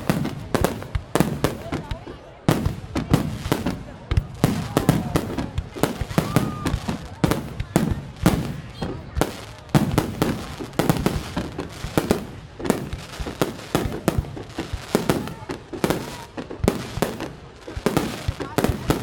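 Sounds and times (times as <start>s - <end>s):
fireworks bursting with echoing bangs: 0.0s - 19.0s.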